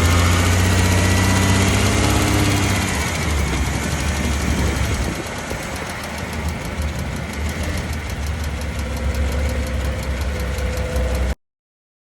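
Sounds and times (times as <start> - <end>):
exhaust rumble: 0.0 - 11.4
fast even ticking: 3.4 - 11.4.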